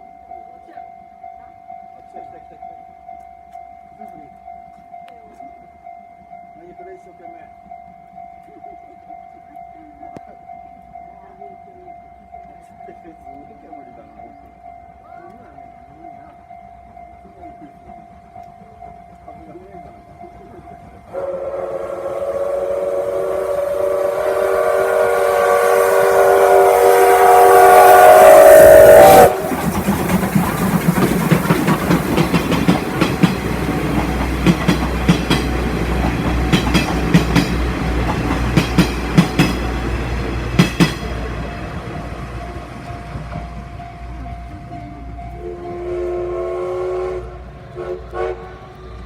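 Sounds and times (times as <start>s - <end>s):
steam whistle blast: 21.1s - 29.6s, 45.4s - 48.7s
train wheels clattering: 21.1s - 46.2s.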